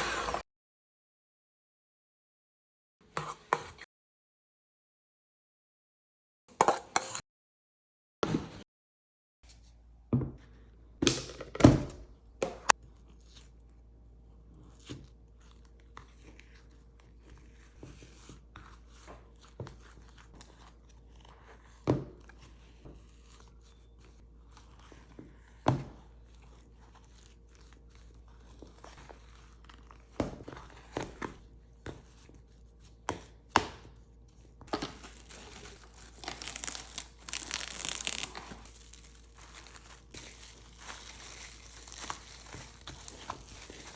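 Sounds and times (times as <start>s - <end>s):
rustling: 34.8s - 43.9s.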